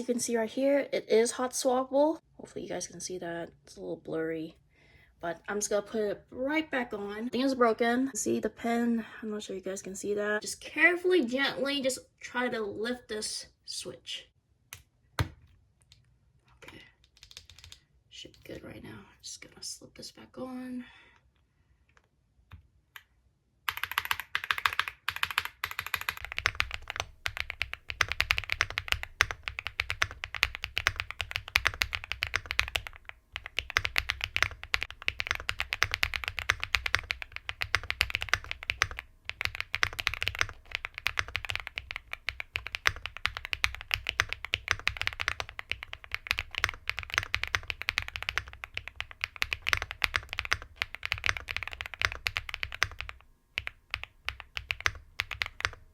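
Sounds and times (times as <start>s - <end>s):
mechanical keyboard typing: 17.1s - 17.8s, 23.7s - 55.9s.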